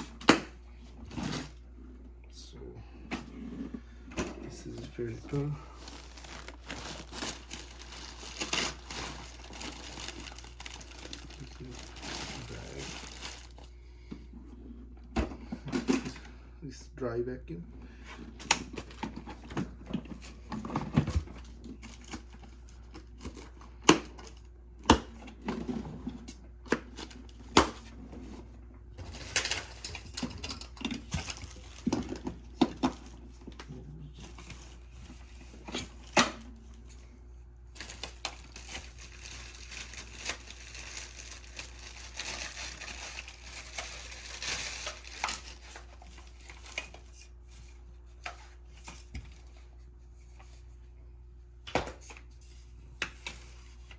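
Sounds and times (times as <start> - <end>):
plastic packaging crinkling: 4.6 - 13.7, 21.4 - 23.5, 29.0 - 36.9, 37.7 - 47.6.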